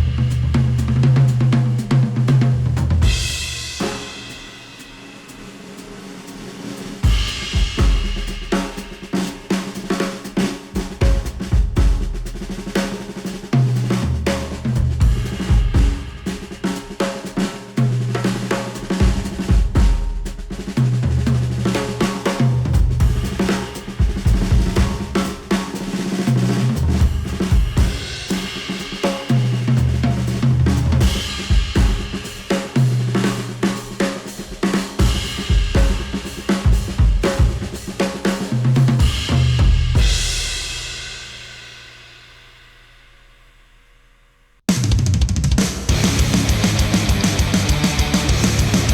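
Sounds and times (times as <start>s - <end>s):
drum kit: 0.0s - 48.9s
repeating bass line: 45.9s - 48.9s.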